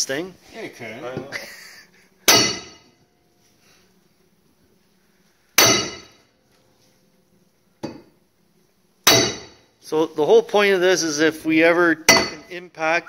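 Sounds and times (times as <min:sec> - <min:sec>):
hammer striking metal: 0:02.3 - 0:03.0, 0:05.6 - 0:06.3, 0:09.0 - 0:09.7, 0:12.1 - 0:12.6.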